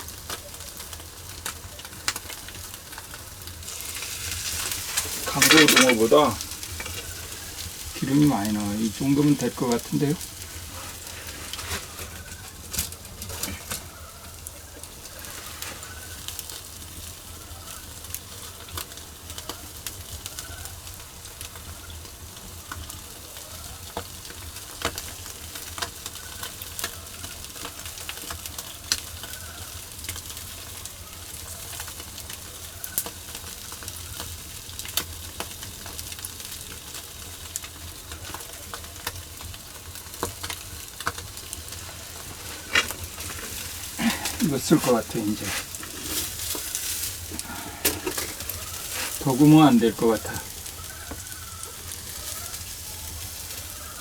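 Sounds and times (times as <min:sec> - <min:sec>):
sharp pops and crackles: 0:00.0 - 0:23.0, 0:31.4 - 0:54.0
fish sizzling on a grill: 0:00.0 - 0:54.0.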